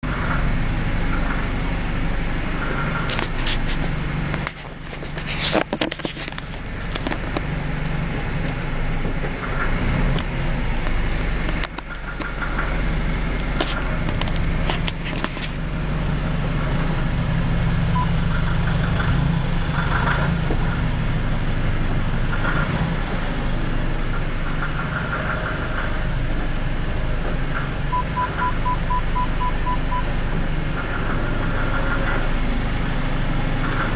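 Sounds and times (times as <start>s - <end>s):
car engine hum: 0.0s - 33.9s
sharp clicking from car: 2.5s - 7.6s, 8.4s - 15.8s, 17.9s - 33.9s
short electronic beeps: 18.0s - 18.2s, 27.9s - 30.1s.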